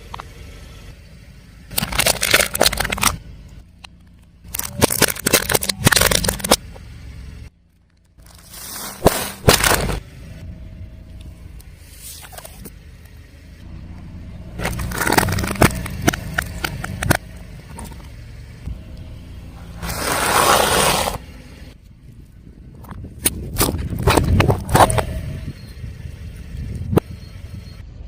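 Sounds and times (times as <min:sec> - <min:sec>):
low vehicle rumble: 0:00.0 - 0:28.0
tyre crushing brittle objects: 0:01.7 - 0:03.2, 0:04.5 - 0:06.6, 0:08.2 - 0:10.0, 0:14.6 - 0:18.0.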